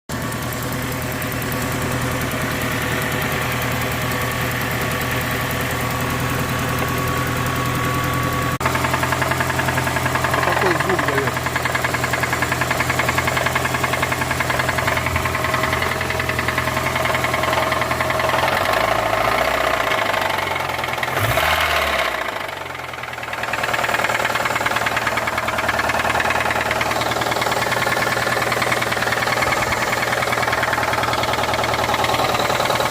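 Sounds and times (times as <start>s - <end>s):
car engine idling with knock: 0.1s - 32.9s
engine revving: 7.9s - 32.9s.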